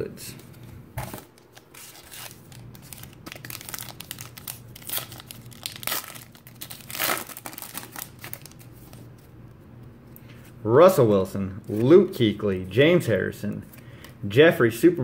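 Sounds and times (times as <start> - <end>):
foil wrapper crinkling: 1.8 - 8.9.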